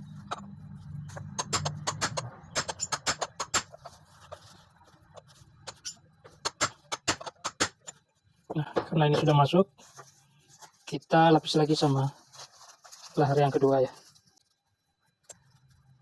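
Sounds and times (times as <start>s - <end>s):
hammer tapping metal socket: 1.2s - 3.8s.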